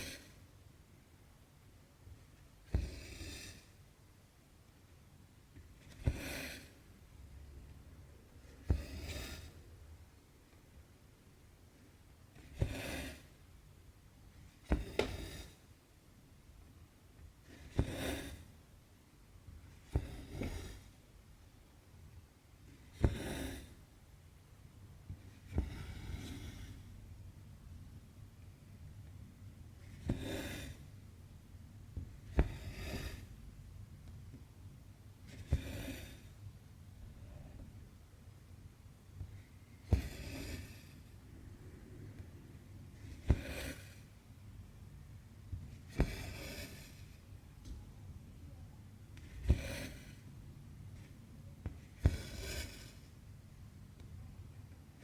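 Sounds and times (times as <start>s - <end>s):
thread swishing through fabric: 14.3s - 15.7s, 19.6s - 21.0s, 45.4s - 47.9s
thread pulled through rasping: 39.3s - 44.1s, 45.5s - 47.9s.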